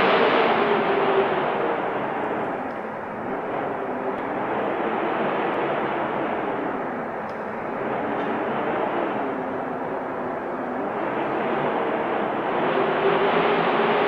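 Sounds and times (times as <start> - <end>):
wind blowing: 0.0 - 14.0.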